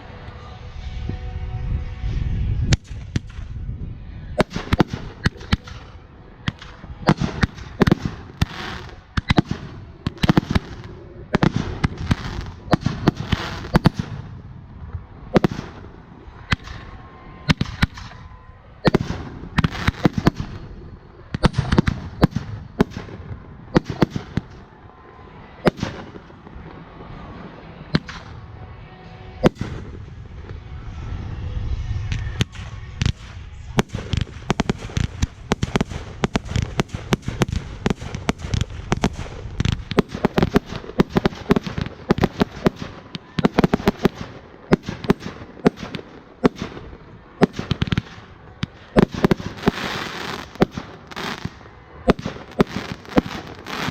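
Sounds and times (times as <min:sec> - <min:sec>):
low rumble: 0:00.0 - 0:13.1, 0:22.1 - 0:41.2
fireworks bangs and crackles: 0:00.0 - 0:53.9.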